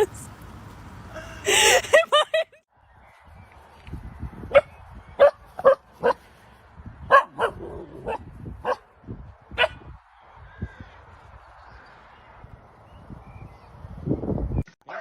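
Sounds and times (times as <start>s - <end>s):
dog barking: 4.5s - 6.2s, 7.1s - 8.8s.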